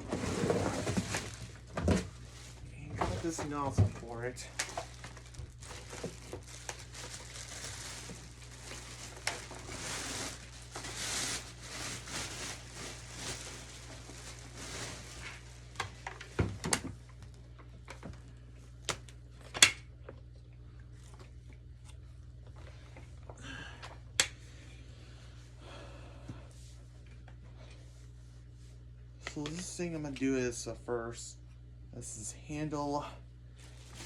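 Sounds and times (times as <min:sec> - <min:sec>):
cardboard packaging rustling: 0:00.0 - 0:16.3, 0:33.6 - 0:34.0.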